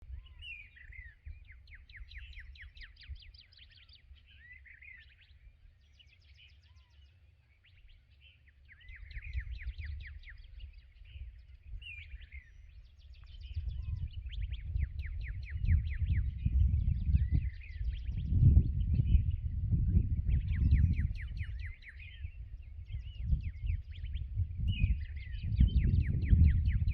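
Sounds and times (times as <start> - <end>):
songbirds trilling: 0.0 - 26.9.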